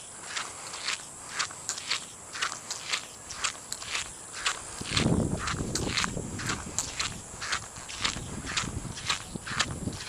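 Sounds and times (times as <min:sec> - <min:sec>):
footsteps sloshing through water: 0:00.2 - 0:10.0.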